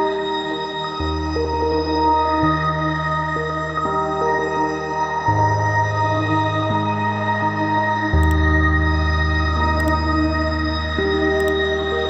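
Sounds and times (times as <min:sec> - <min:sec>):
slow bass line: 0:08.1 - 0:11.8.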